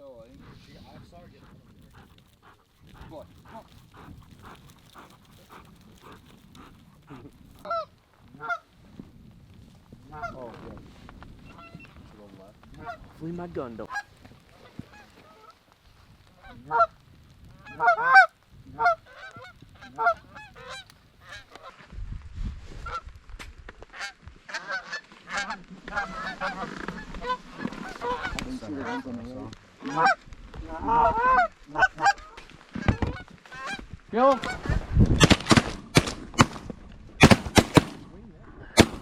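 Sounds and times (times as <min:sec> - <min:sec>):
geese honking: 0:17.6 - 0:21.8, 0:23.9 - 0:29.2, 0:29.8 - 0:30.2, 0:30.8 - 0:34.8.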